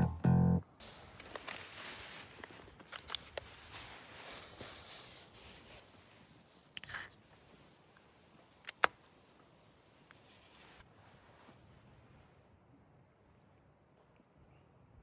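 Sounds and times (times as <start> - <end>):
faint low background noise: 0.0 - 15.0
short rustle: 0.8 - 12.2.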